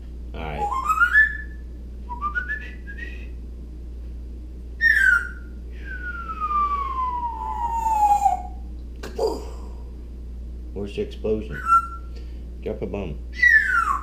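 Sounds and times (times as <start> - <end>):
parrot whistling: 0.5 - 3.1, 4.8 - 8.6, 11.5 - 12.2, 13.3 - 14.0.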